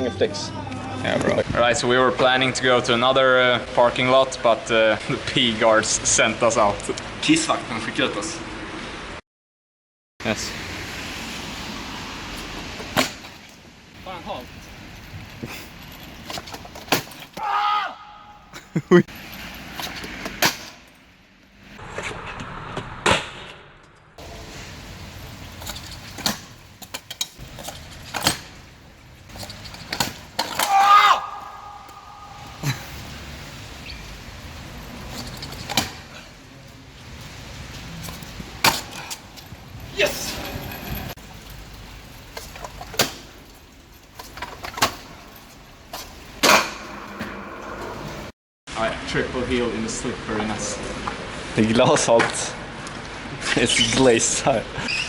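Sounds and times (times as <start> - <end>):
scooter wheels rolling on wet asphalt: 10.2 - 17.8, 19.0 - 22.8, 24.2 - 48.3
scooter landing clacks: 25.3 - 32.6, 35.0 - 36.2, 38.0 - 39.5, 42.3 - 48.2.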